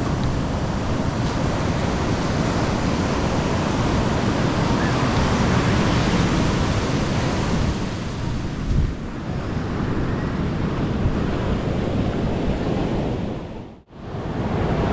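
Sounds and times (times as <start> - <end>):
ocean surf breaking: 0.0 - 14.9
wind on microphone: 0.0 - 14.9.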